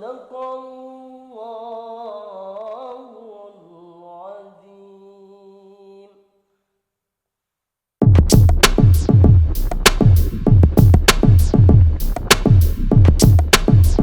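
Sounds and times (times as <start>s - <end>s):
man reciting melodically: 0.0s - 6.1s.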